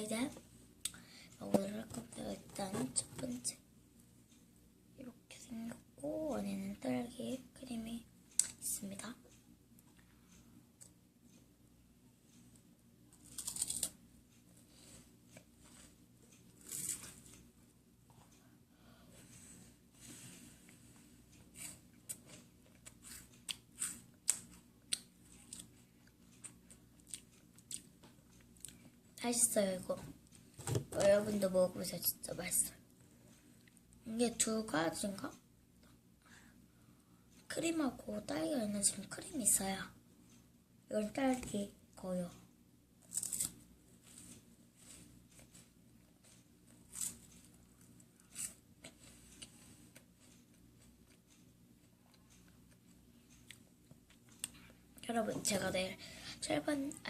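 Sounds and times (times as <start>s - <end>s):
biscuit crunching: 13.2s - 14.0s.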